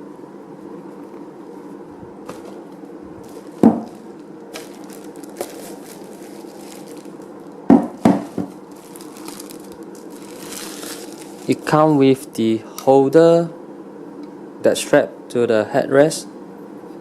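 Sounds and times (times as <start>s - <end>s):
steady low hum: 0.0s - 17.0s
plastic packaging handled: 2.2s - 12.0s.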